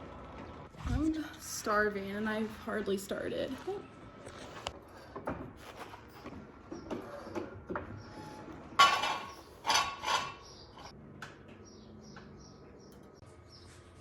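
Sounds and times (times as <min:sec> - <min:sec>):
metal jack stand clanks: 0:08.8 - 0:10.9.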